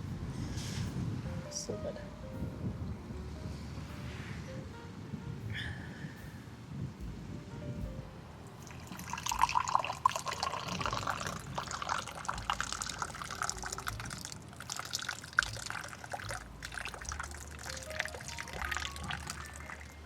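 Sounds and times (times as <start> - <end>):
tea pouring into a glass: 8.6 - 20.0.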